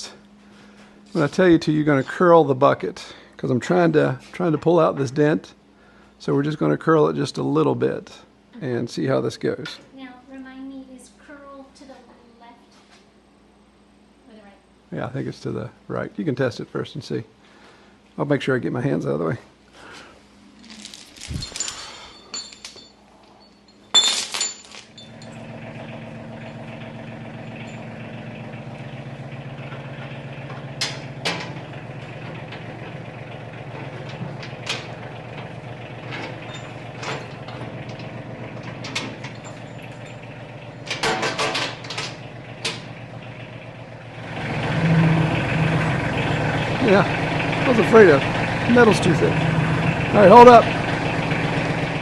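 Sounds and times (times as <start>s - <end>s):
sharp metal clanks: 21.2s - 28.2s, 34.1s - 42.9s
tractor engine idling: 24.9s - 52.0s.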